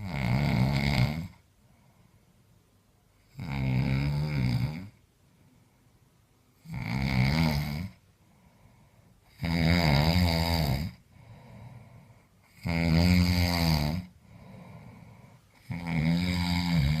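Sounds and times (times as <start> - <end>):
harsh rattling snoring: 0.0 - 1.4, 3.3 - 5.0, 6.6 - 8.0, 9.3 - 11.8, 12.5 - 17.0
quiet breaths out: 1.3 - 2.6, 5.2 - 6.2, 8.0 - 9.4, 10.9 - 12.6, 14.1 - 15.7.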